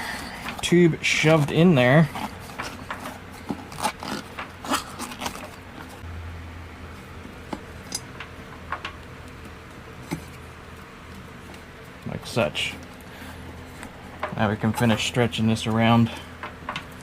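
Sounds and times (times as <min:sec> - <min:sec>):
low steady hum: 0:00.0 - 0:17.0
rubber rubbing and squeaking: 0:00.6 - 0:06.0.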